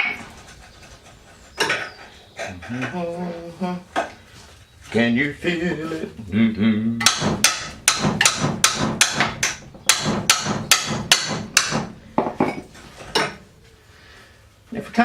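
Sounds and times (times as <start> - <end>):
hammer striking rusted bolt: 7.0 - 13.4.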